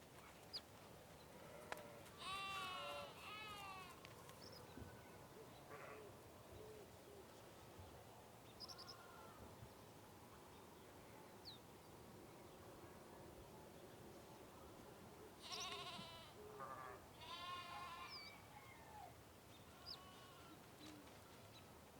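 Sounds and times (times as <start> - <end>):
sheep bleating: 1.5 - 4.0, 15.4 - 18.2, 19.7 - 20.6.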